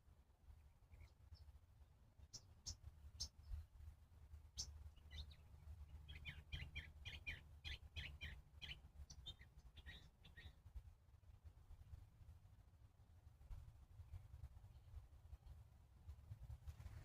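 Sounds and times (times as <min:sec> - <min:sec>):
bird chirping: 0:00.6 - 0:03.8, 0:04.5 - 0:10.6.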